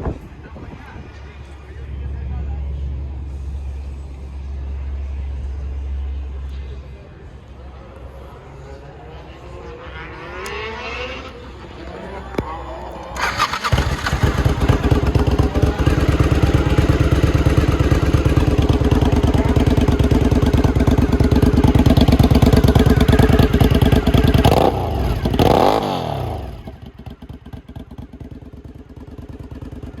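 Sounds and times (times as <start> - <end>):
engine revving: 9.0 - 20.0, 21.8 - 26.9
motorcycle engine running: 9.4 - 30.0.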